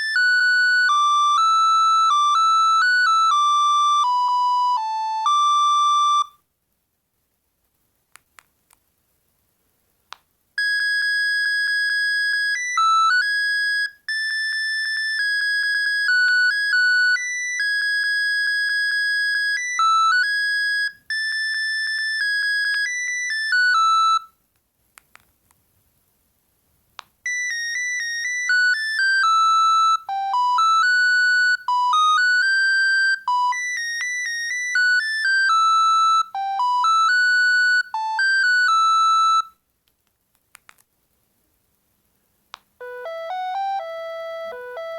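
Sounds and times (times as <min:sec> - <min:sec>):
mobile phone ringtone melody: 0:00.0 - 0:06.4, 0:10.6 - 0:24.3, 0:27.3 - 0:39.6, 0:42.8 - 0:44.9.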